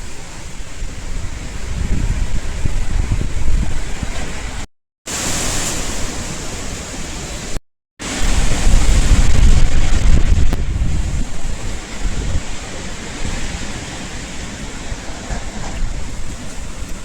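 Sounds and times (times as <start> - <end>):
wind buffeting microphone: 0.0 - 5.4, 8.0 - 17.0
strong wind blowing: 0.0 - 17.0.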